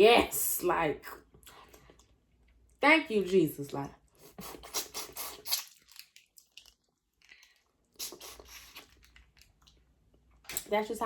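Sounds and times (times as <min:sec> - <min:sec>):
person chewing food: 0:04.1 - 0:10.6.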